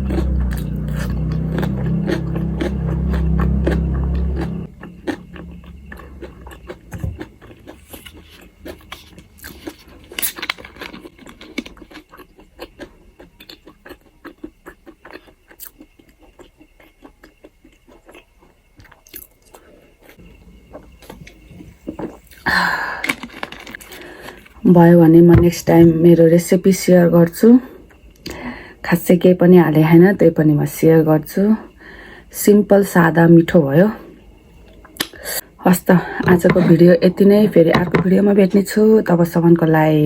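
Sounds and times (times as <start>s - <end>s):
person chewing crunchy food: 0.0s - 24.6s.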